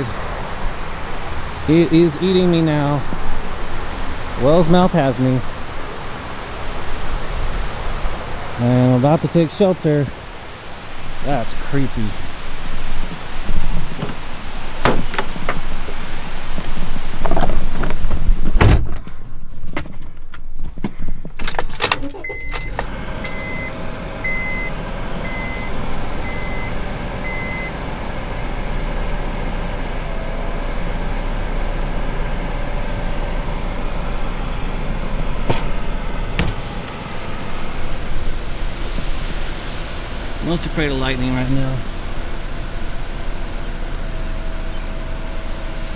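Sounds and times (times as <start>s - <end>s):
wind rushing around car: 0.0s - 45.9s
car door shutting: 14.8s - 15.7s, 17.2s - 19.2s, 21.3s - 25.5s, 35.4s - 38.2s
car warning chime beeping: 22.1s - 27.8s.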